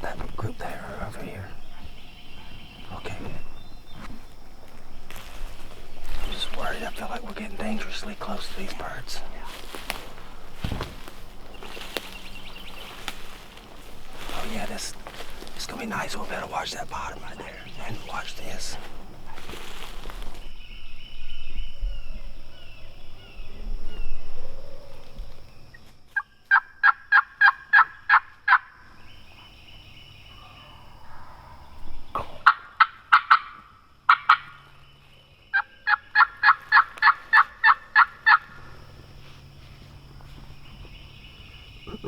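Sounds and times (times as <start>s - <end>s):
turkey yelping: 26.5s - 28.7s, 32.4s - 34.5s, 35.5s - 38.5s.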